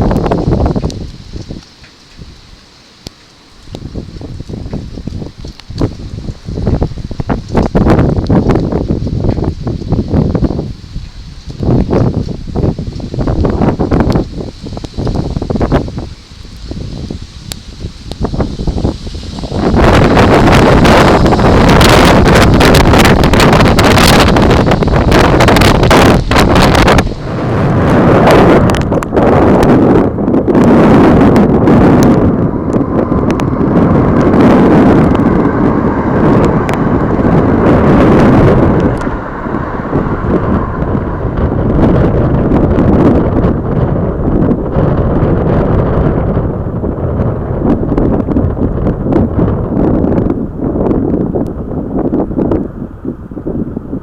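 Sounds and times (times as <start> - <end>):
wind buffeting microphone: 0.0 - 54.0
train rumbling by: 15.5 - 50.7.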